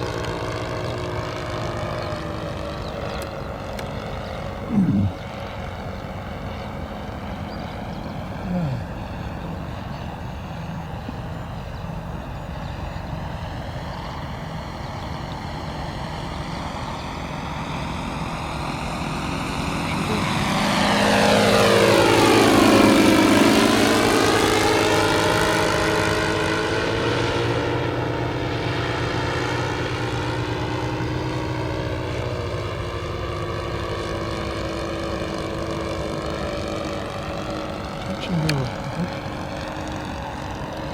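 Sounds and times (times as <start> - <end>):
model aircraft engine flying past: 0.0 - 40.9.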